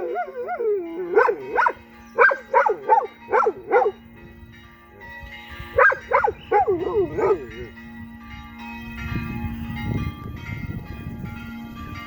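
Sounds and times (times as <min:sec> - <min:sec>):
dog howling: 0:00.0 - 0:04.0, 0:05.8 - 0:07.7
church bells ringing: 0:00.0 - 0:12.0.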